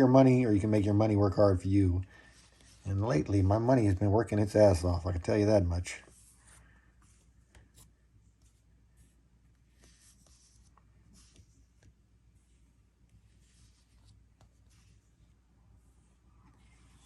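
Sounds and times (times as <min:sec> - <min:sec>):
comic books rustling and sliding: 0:02.2 - 0:04.0, 0:06.0 - 0:17.0.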